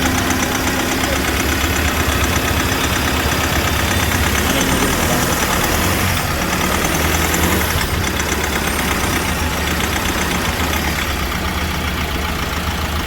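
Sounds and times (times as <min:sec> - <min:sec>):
diesel engine idling: 0:00.0 - 0:13.0
engine knocking clatter: 0:00.0 - 0:13.0.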